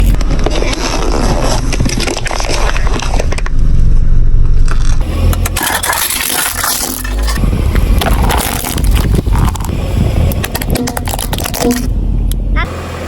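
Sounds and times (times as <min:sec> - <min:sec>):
tyre crushing crunchy objects: 0:00.0 - 0:11.9
low engine rumble: 0:03.8 - 0:13.0.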